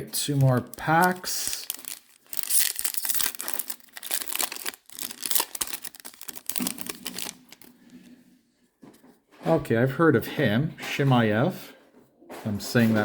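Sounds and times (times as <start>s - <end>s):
plastic wrapper crinkling and tearing: 0.0s - 8.2s.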